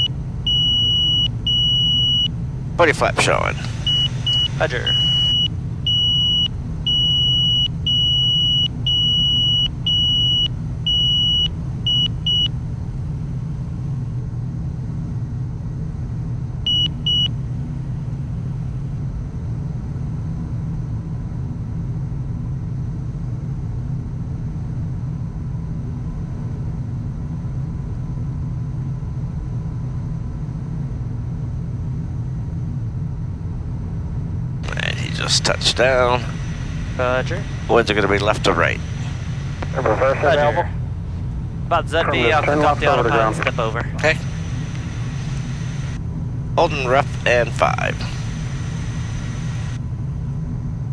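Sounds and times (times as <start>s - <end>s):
low cockpit rumble: 0.0s - 14.1s, 34.6s - 50.4s.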